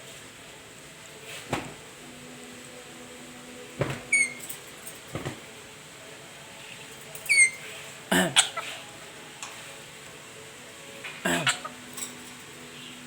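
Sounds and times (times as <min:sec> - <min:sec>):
parrot squeaky chirps: 0:04.1 - 0:04.4, 0:06.7 - 0:07.7
parrot rough squawk: 0:07.3 - 0:08.8, 0:11.2 - 0:11.8.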